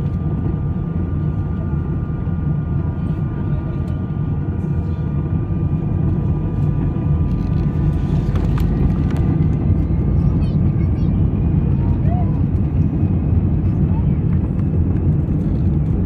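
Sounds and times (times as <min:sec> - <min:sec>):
jet engine rumble inside cabin: 0:00.0 - 0:16.0.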